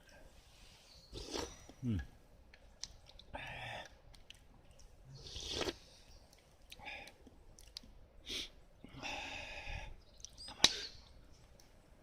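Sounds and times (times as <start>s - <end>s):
person chewing: 1.2s - 7.9s.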